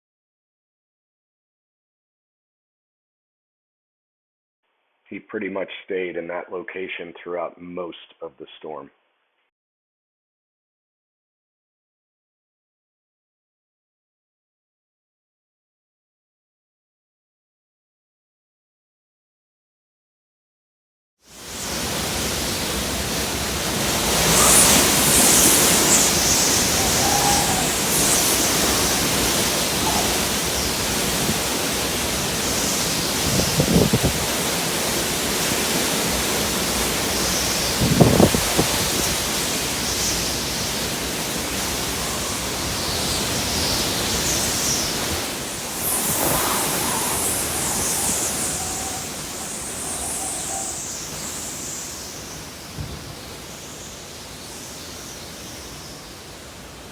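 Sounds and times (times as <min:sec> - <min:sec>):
hurricane winds rushing: 0:21.5 - 0:53.6.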